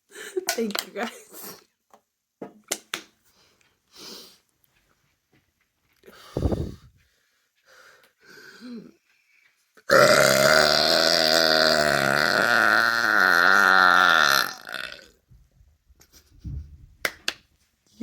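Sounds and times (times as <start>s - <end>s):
woman belching: 9.9s - 15.2s.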